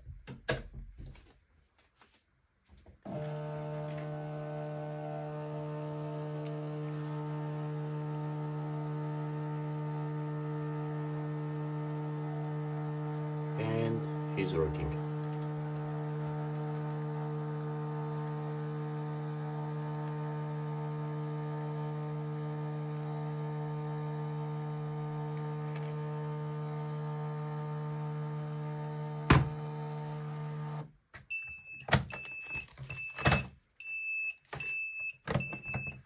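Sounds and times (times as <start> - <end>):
printer motor humming: 3.1 - 30.9.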